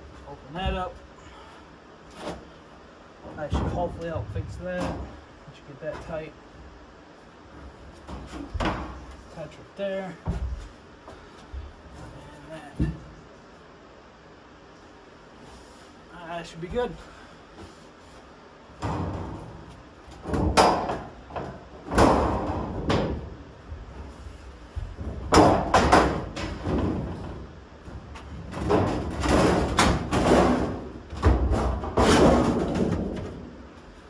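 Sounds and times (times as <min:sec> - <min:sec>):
sheet metal banging against car body: 0:25.2 - 0:27.4, 0:28.5 - 0:33.5.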